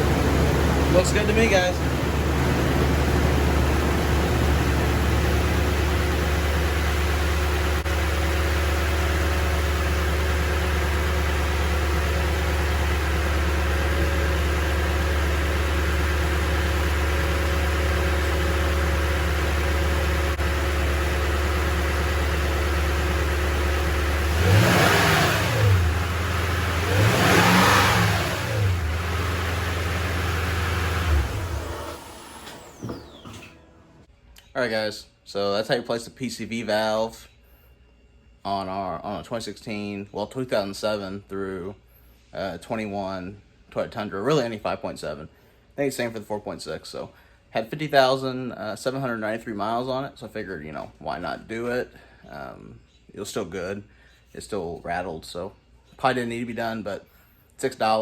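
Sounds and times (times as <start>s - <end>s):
engine revving: 0.0s - 33.6s
engine idling: 0.0s - 34.1s.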